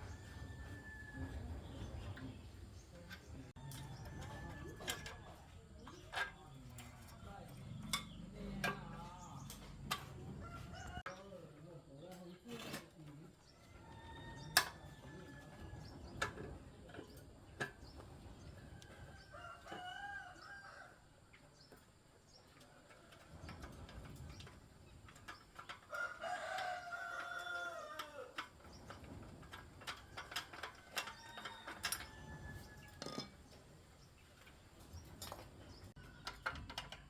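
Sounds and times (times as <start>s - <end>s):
rooster crowing: 25.9s - 28.4s.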